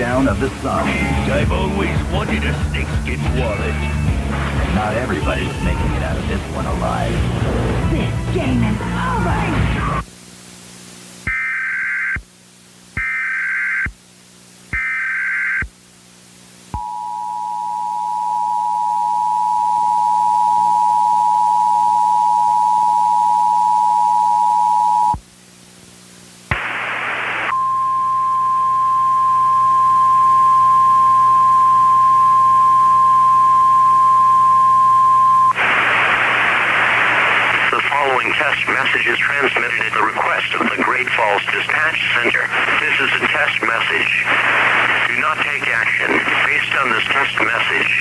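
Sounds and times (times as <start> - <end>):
burst of static: 0.0 - 10.1, 26.4 - 30.2, 35.4 - 48.0
data burst tones: 11.3 - 12.2, 13.0 - 14.0.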